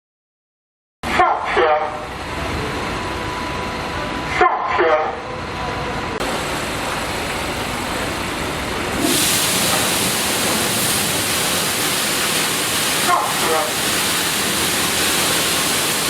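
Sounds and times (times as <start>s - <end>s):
car wash machine rumble: 5.4s - 16.0s
water spray hiss: 8.9s - 16.0s.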